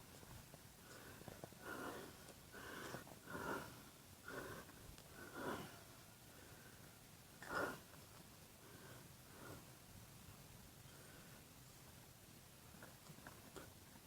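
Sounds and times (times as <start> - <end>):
man breathing and sniffing: 0.8 - 6.6.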